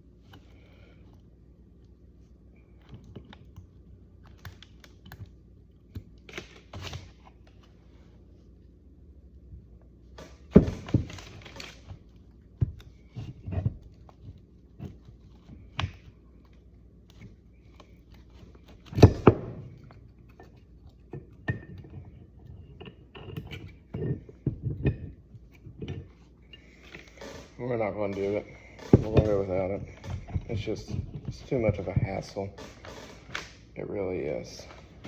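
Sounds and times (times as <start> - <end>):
metal parts knocking and clinking: 18.8 - 33.4.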